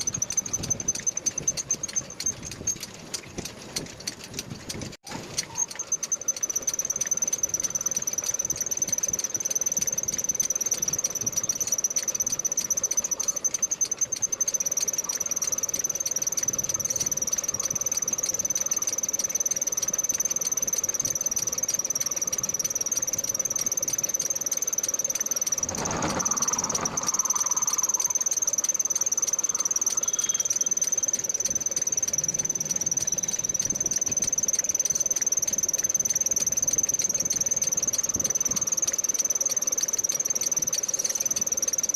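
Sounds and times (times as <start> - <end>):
lathe cutting steel squealing: 5.4 - 39.0
brief rushing noise: 25.6 - 28.2.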